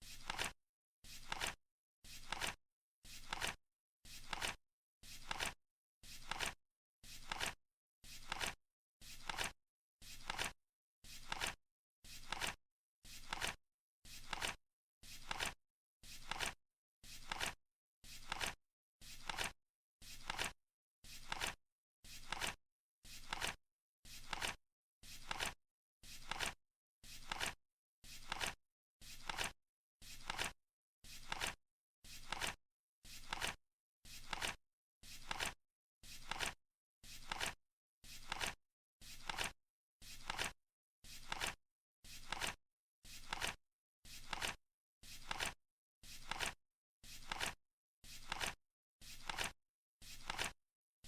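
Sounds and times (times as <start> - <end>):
flip clock cards flipping: 0.2 - 0.5, 1.2 - 1.6, 2.2 - 2.6, 3.2 - 3.6, 4.2 - 4.6, 5.2 - 5.6, 6.2 - 6.6, 7.2 - 7.6, 8.2 - 8.6, 9.2 - 9.5, 10.2 - 10.5, 11.2 - 11.6, 12.2 - 12.6, 13.2 - 13.6, 14.2 - 14.6, 15.2 - 15.6, 17.2 - 17.6, 18.2 - 18.6, 19.2 - 19.5, 20.2 - 20.5, 21.2 - 21.6, 22.2 - 22.6, 23.2 - 23.6, 24.2 - 24.6, 25.2 - 25.6, 26.2 - 26.6, 27.2 - 27.6, 28.2 - 28.6, 29.2 - 29.5, 30.2 - 30.5, 31.2 - 31.6, 32.2 - 32.6, 33.2 - 33.6, 34.2 - 34.6, 35.2 - 35.6, 36.2 - 36.6, 37.2 - 37.6, 38.2 - 38.6, 39.2 - 39.5, 40.2 - 40.5, 41.2 - 41.6, 42.2 - 42.6, 43.2 - 43.6, 44.2 - 44.6, 45.2 - 45.6, 46.2 - 46.6, 47.2 - 47.6, 48.2 - 48.6, 49.2 - 49.5, 50.2 - 50.5.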